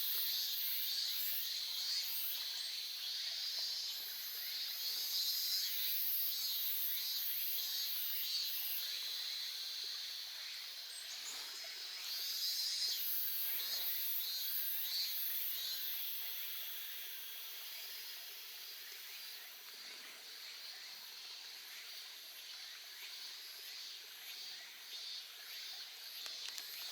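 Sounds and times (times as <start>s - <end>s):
insects trilling: 0.0s - 26.9s.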